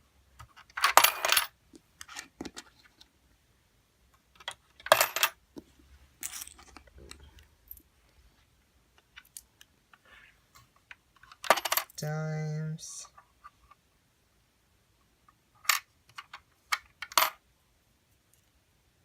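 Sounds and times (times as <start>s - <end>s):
coins clattering through plastic: 0.7s - 1.5s.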